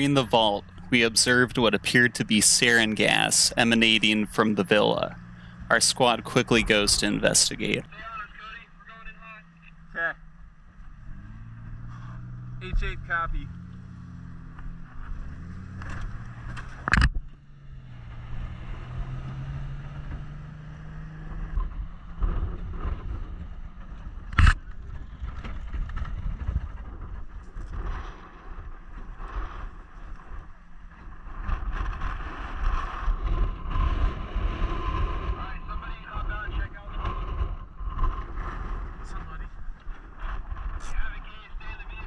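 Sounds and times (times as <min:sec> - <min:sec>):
truck engine running: 0:00.0 - 0:18.6
vehicle rumbling over ground: 0:00.0 - 0:42.0.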